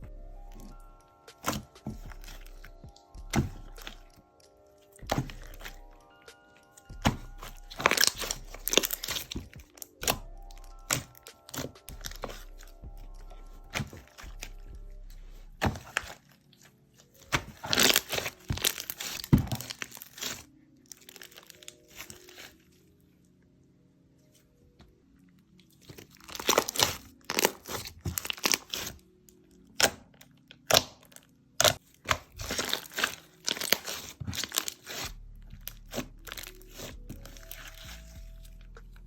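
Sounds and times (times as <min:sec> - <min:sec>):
soft background music: 0:00.0 - 0:39.0
slime crackling and popping: 0:06.8 - 0:14.6, 0:17.2 - 0:22.5, 0:25.9 - 0:29.0, 0:29.8 - 0:38.8.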